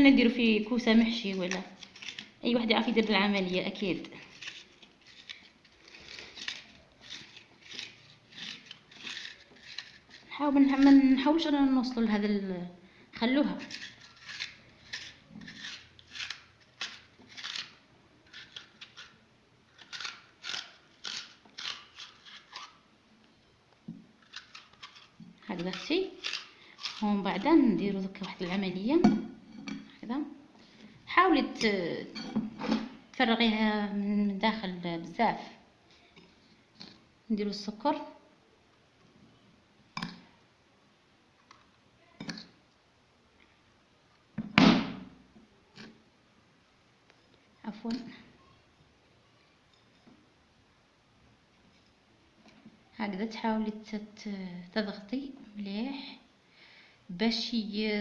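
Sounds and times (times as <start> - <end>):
knife scraping turnip flesh: 1.2 - 11.0, 13.4 - 22.9, 24.2 - 28.7.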